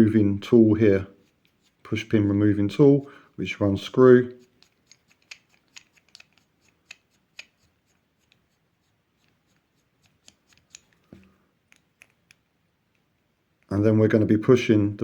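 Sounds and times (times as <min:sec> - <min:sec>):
small metal parts clicking: 0:04.5 - 0:07.6.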